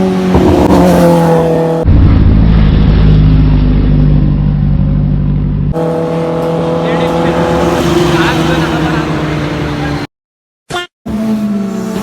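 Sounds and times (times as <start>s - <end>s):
motorcycle engine running: 0.2s - 9.0s.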